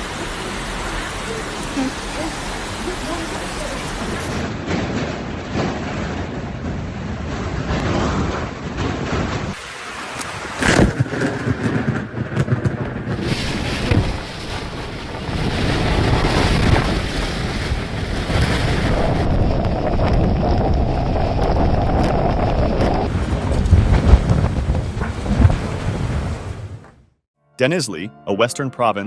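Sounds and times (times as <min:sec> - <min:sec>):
rushing water: 0:00.0 - 0:04.6, 0:09.4 - 0:11.4, 0:13.1 - 0:26.9
wind buffeting microphone: 0:10.6 - 0:26.9.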